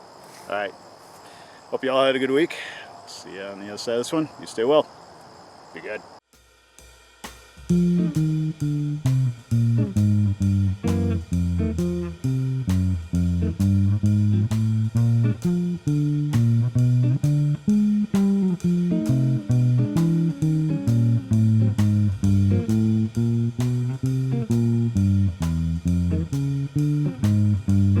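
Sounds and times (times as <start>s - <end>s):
blues walking bass on guitar: 7.7s - 28.0s.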